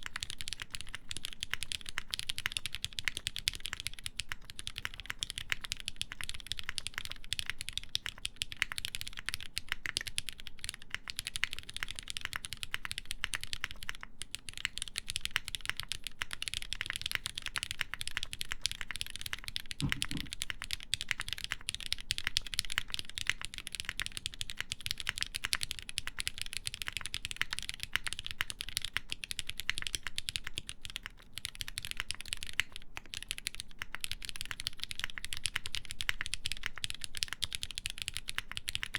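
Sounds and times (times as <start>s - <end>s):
mechanical keyboard typing: 0.0s - 38.9s
low thump: 19.8s - 20.3s.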